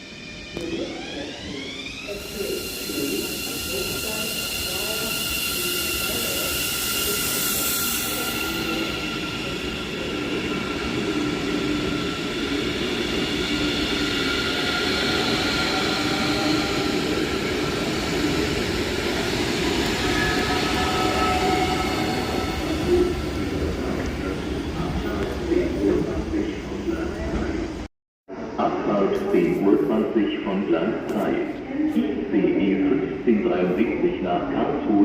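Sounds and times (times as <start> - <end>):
high whining tones: 0.0 - 26.2.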